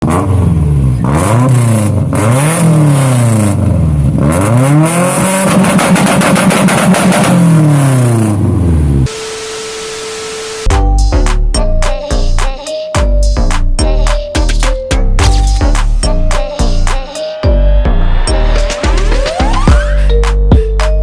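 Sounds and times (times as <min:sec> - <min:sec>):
car engine revving: 0:00.0 - 0:09.1
steady tone with hiss: 0:09.1 - 0:10.7.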